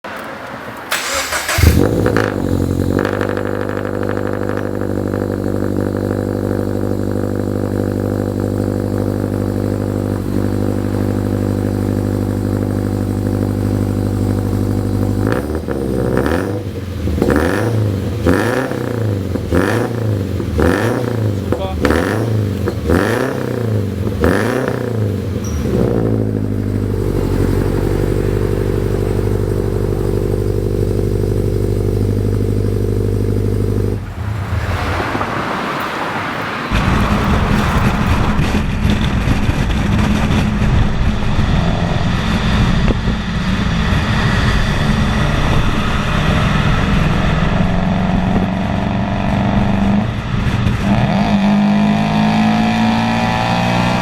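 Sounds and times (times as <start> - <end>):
car engine revving: 0.0 - 54.0
rushing noise: 33.6 - 54.0.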